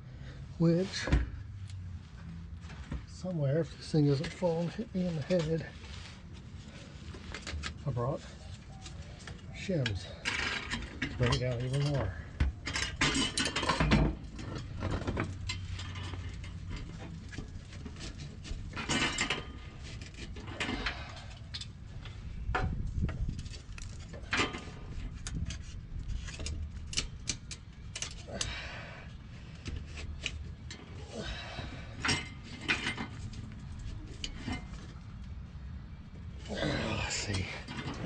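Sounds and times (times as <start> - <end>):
metal clinks and scrapes: 6.7 - 22.2, 23.0 - 28.5, 31.8 - 35.2, 36.4 - 38.0.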